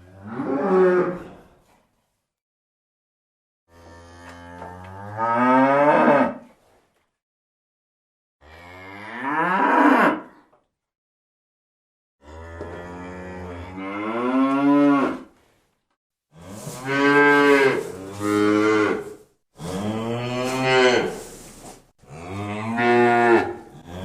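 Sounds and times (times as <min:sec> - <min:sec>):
cattle mooing: 0:16.6 - 0:21.2, 0:22.1 - 0:24.0.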